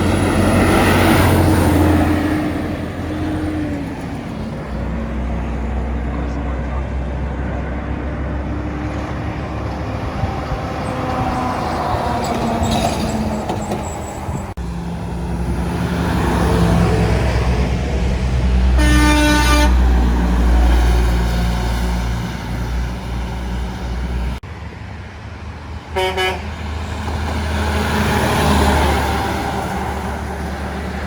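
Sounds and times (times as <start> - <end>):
trucks passing on highway: 0.0 - 31.0
truck horn blast: 18.7 - 20.1, 25.9 - 26.6.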